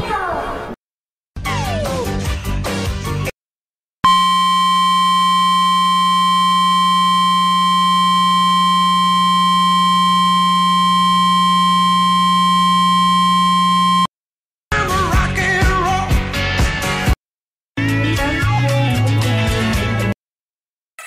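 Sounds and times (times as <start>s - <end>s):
electronic test tone: 4.0s - 14.1s.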